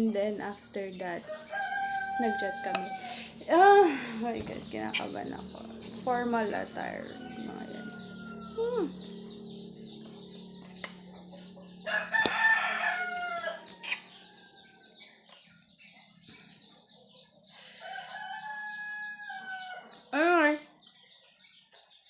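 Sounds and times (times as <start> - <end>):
steady low hum: 0.0 - 20.5
small birds chirping: 0.0 - 22.0
rooster crowing: 1.2 - 3.4, 6.8 - 9.6, 11.4 - 15.1, 17.6 - 20.1
sharp clicks: 10.8 - 11.0.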